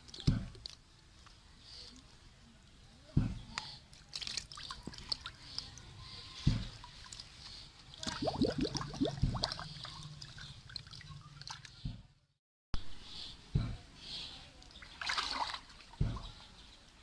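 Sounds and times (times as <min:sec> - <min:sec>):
water sloshing and dripping: 0:00.0 - 0:02.2, 0:03.4 - 0:12.2, 0:14.6 - 0:16.9
splashes: 0:03.9 - 0:05.8, 0:06.5 - 0:11.8, 0:14.8 - 0:16.4
dull thumps: 0:16.0 - 0:16.4.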